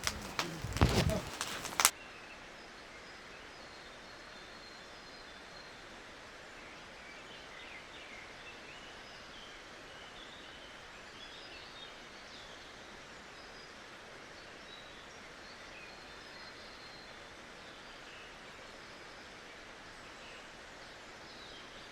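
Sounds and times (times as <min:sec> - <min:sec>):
small birds chirping: 0:00.0 - 0:01.9.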